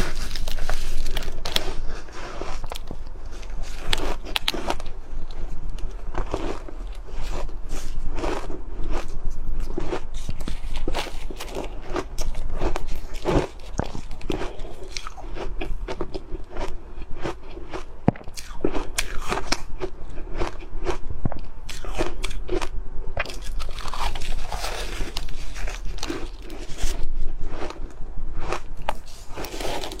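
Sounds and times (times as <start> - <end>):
ice being chewed: 0.0 - 30.0.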